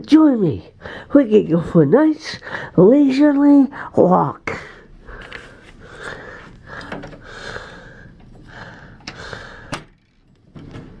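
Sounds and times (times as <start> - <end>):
person breathing hard: 0.8 - 1.1, 2.4 - 2.8, 3.7 - 9.9.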